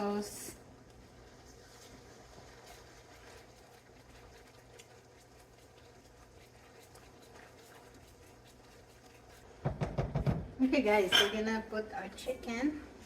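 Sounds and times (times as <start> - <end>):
sauce sizzling in a pan: 0.0 - 10.0.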